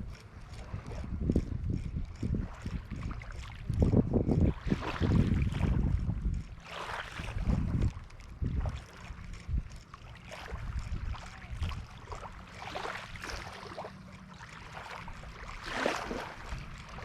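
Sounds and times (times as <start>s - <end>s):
faint ticks: 0.0s - 4.4s, 7.6s - 15.4s
wind buffeting microphone: 0.0s - 17.0s.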